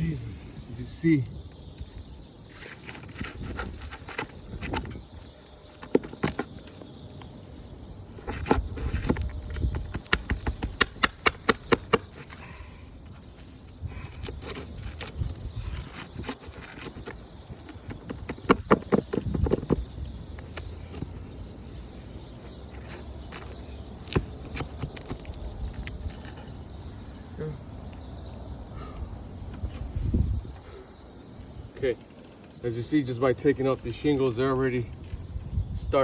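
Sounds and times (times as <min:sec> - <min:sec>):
tools knocking on roof shingles: 0:08.3 - 0:12.5, 0:15.9 - 0:21.2
sharp tapping: 0:08.6 - 0:12.5.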